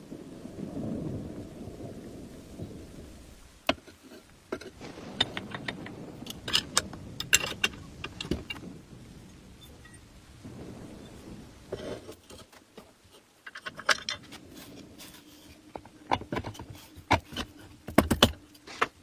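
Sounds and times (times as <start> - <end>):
low rumble: 4.4 - 12.1
metal tools clicking and clinking: 4.5 - 8.6.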